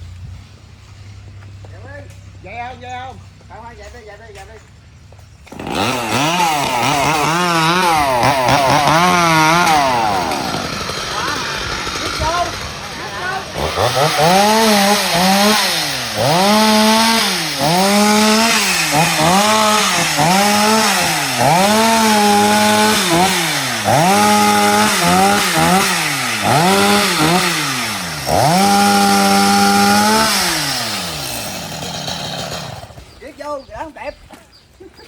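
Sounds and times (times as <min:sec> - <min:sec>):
chainsaw revving: 0:05.4 - 0:33.2.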